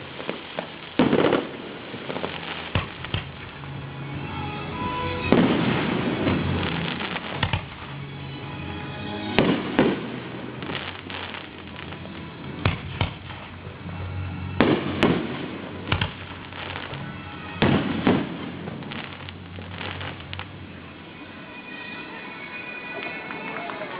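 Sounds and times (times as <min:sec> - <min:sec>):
firework shells bursting: 0:00.0 - 0:03.6, 0:05.2 - 0:08.0, 0:09.3 - 0:13.7, 0:14.6 - 0:20.9.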